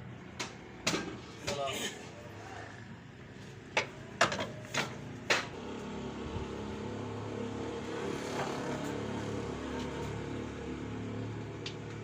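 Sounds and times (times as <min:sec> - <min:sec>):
low mechanical engine drone: 0:05.5 - 0:12.0.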